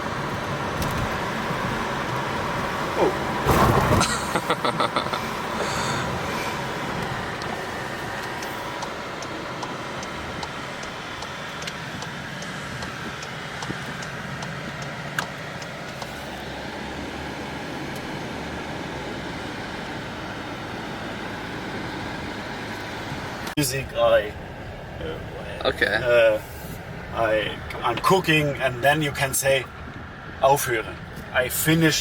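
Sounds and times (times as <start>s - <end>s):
vehicle engine and road rumble: 0.0s - 32.0s
light regular ticking: 6.8s - 16.2s.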